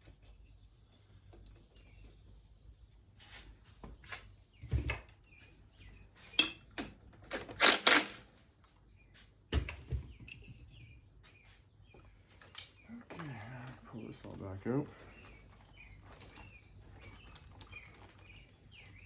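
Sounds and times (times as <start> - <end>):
metal tools clinking: 7.6 - 8.2.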